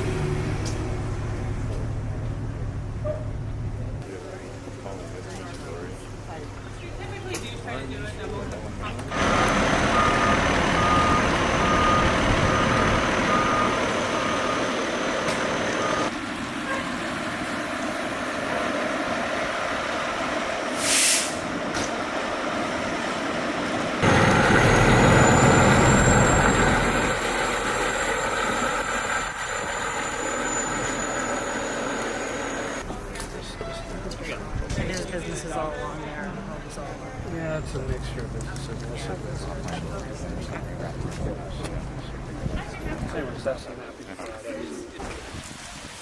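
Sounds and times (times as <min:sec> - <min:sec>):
truck engine: 0:00.0 - 0:34.1
diesel engine running: 0:08.1 - 0:20.8, 0:21.4 - 0:33.0
truck reversing alarm beeping: 0:09.1 - 0:16.2, 0:24.0 - 0:32.8
air brake hiss: 0:20.8 - 0:21.5.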